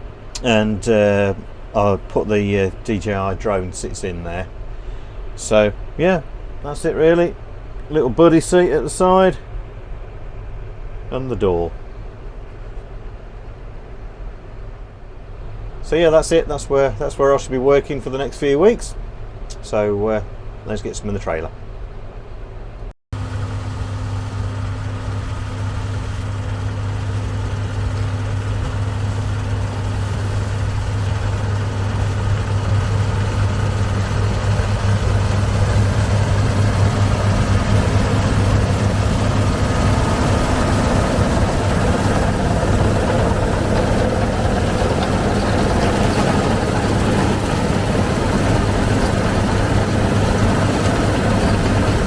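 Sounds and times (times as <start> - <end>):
tractor diesel engine running: 23.2 - 52.0.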